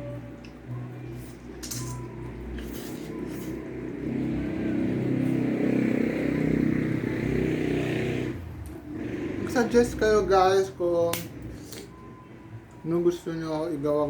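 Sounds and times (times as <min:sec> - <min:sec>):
vehicle engine running: 0:03.2 - 0:10.7.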